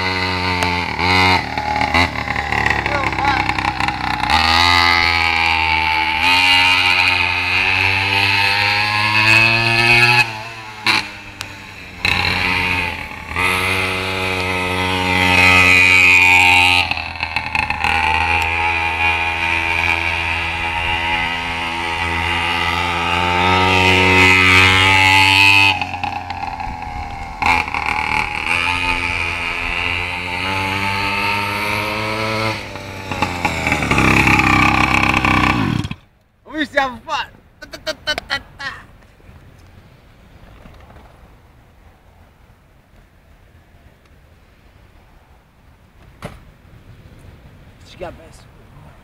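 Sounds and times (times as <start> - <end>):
small motorbike engine revving: 0.0 - 36.1.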